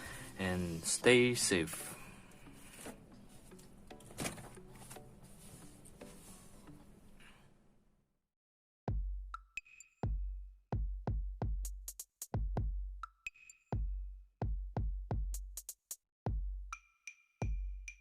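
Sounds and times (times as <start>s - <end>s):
deep kick drum hits: 8.9s - 9.3s
electronic music with drum machine: 8.9s - 18.0s.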